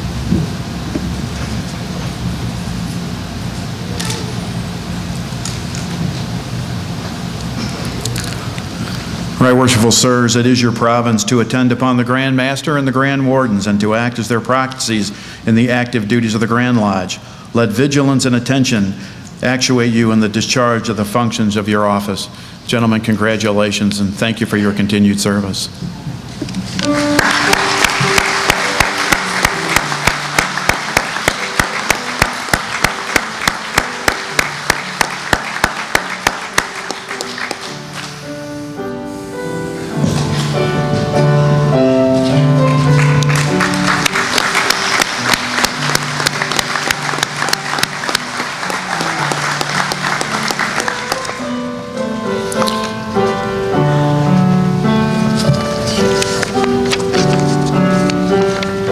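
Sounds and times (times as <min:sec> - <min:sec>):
instrumental music: 0:26.7 - 0:58.9
audience applauding: 0:26.8 - 0:38.2, 0:42.7 - 0:51.5.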